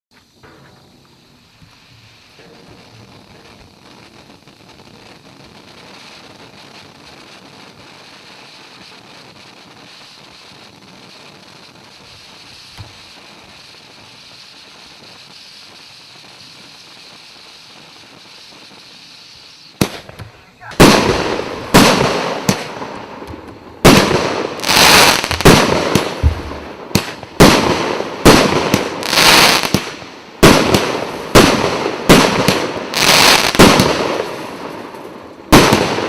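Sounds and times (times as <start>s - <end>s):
outdoor hiss: 0.1s - 36.0s.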